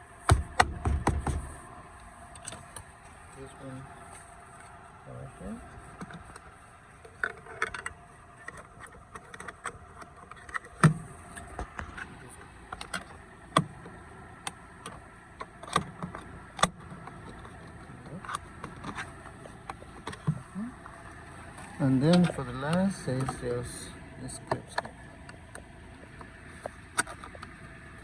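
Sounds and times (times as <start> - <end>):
loud knock: 0.3 - 1.5.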